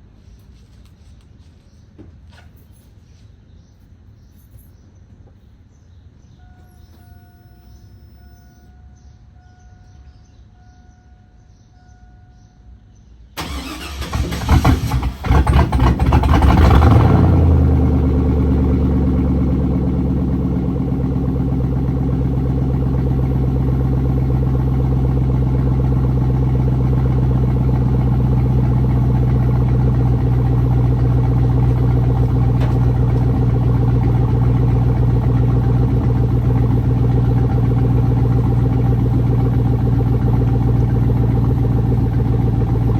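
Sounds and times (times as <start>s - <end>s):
truck engine starting and idling: 13.4s - 42.9s.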